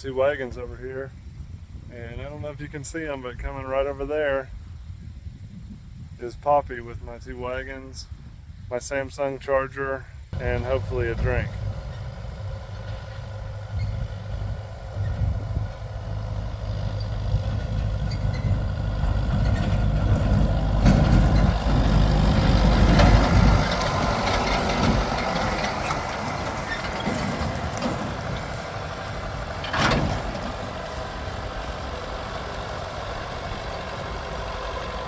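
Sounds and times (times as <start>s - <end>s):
diesel engine idling: 10.4s - 35.0s.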